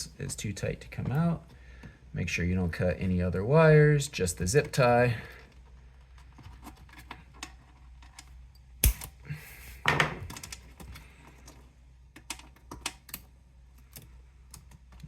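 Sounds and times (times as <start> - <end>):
wire cutters snipping zip tie: 8.8 - 9.1
plastic parts and wires clicking: 10.2 - 15.0.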